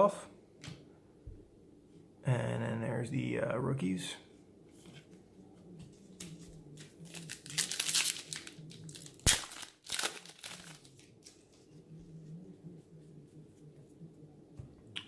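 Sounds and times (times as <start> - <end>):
foil wrapper crinkling and tearing: 6.8 - 11.4.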